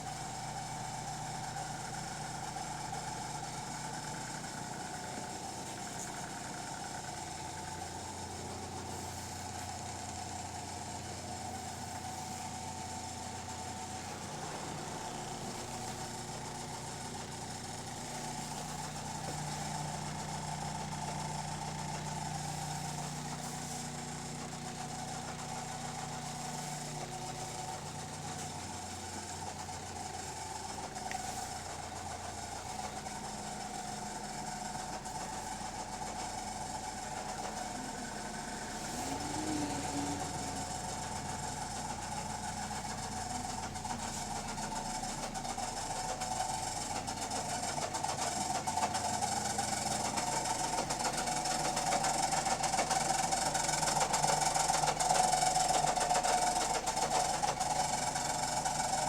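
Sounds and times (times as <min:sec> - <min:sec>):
bus diesel engine drone: 0:03.5 - 0:47.4
gearbox whine: 0:11.4 - 0:23.1, 0:24.5 - 0:45.8.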